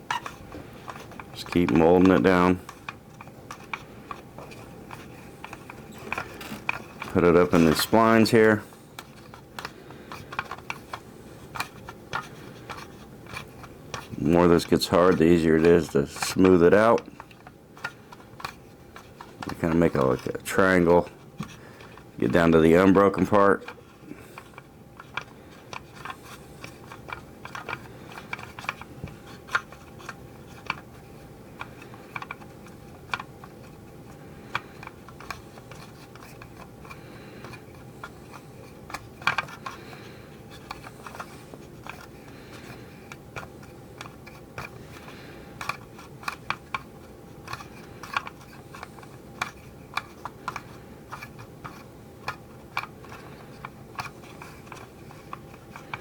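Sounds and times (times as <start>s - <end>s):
fingers and tool clicking and tapping: 23.2s - 56.0s.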